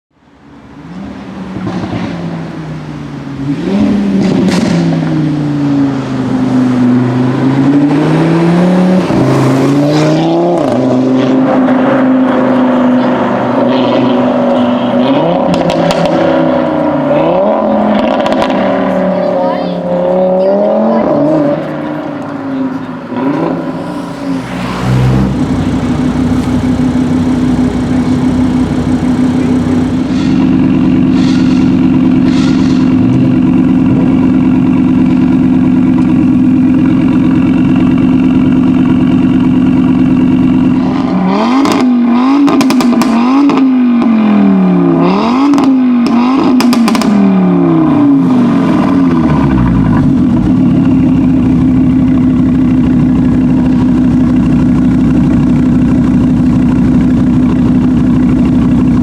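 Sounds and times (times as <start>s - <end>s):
car engine revving: 0.4s - 59.0s
car engine idling: 21.5s - 41.1s, 46.9s - 59.0s
exhaust crackles and pops: 23.2s - 31.1s, 48.7s - 59.0s.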